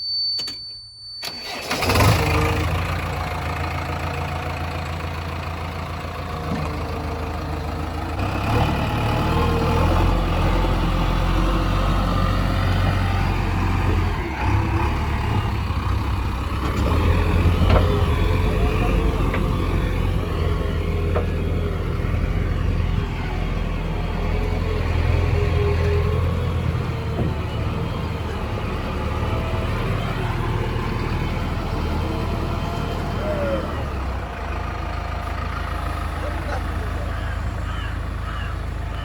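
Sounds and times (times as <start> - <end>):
thin high tone: 0.0 - 1.8
diesel engine running: 1.2 - 39.0.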